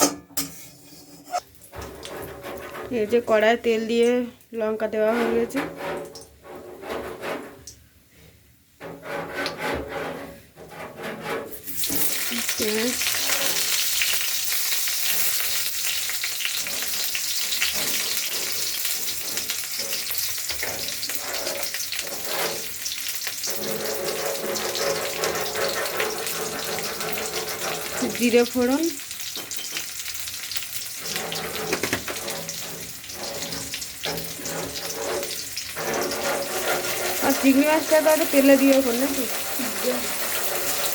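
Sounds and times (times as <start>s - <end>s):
spices sizzling in hot oil: 11.5s - 40.9s.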